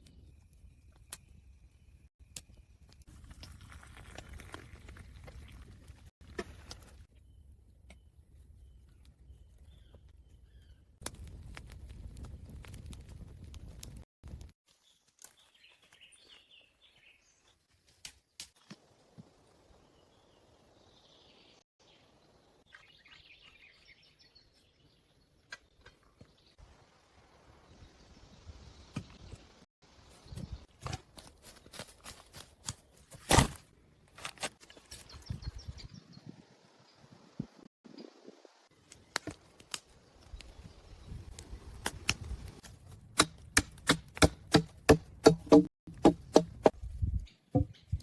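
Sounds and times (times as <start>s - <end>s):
forest ambience: 0.0s - 11.4s, 14.7s - 42.6s
tool striking wood: 43.2s - 46.7s.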